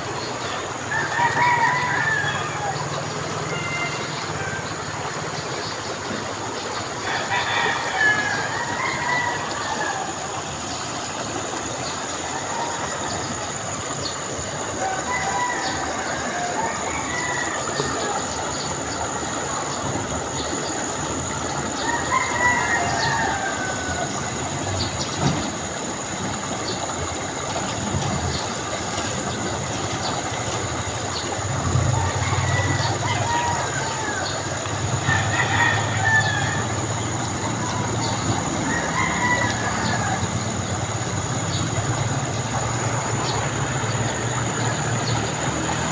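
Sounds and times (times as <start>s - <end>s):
rooster crowing: 0.9s - 4.9s, 7.0s - 10.5s, 14.8s - 18.4s, 21.6s - 25.1s, 31.5s - 45.9s.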